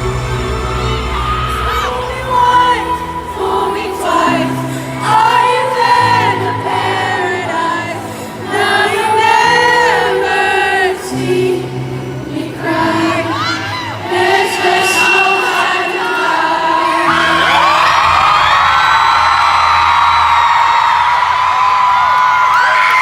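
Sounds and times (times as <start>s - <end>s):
sustained low chords: 0.0s - 5.0s
woman singing a slow ballad: 0.0s - 17.3s.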